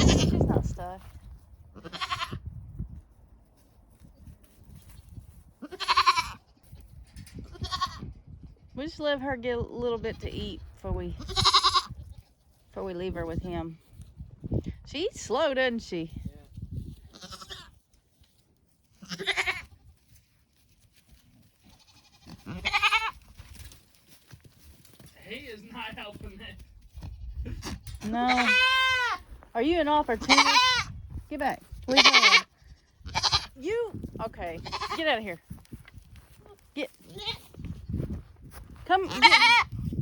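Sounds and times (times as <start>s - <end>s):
goat bleating: 0.0s - 0.4s, 1.8s - 2.4s, 5.6s - 6.8s, 7.5s - 8.1s, 11.1s - 12.4s, 17.1s - 17.7s, 19.0s - 19.8s, 21.6s - 23.2s, 27.0s - 29.2s, 30.1s - 30.9s, 31.8s - 33.6s, 34.4s - 35.3s, 36.4s - 37.6s, 39.0s - 39.8s.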